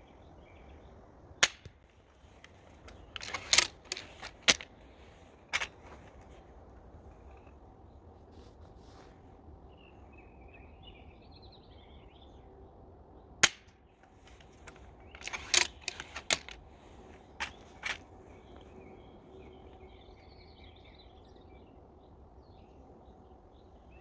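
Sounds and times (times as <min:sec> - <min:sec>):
crossbow mechanical clacks: 0:01.4 - 0:06.4, 0:13.4 - 0:18.7.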